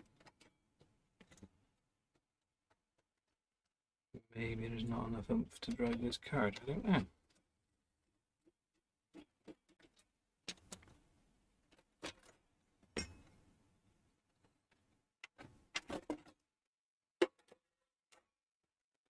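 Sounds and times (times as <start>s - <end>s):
hands handling computer parts: 0.0s - 3.4s, 8.4s - 11.0s, 11.7s - 13.4s.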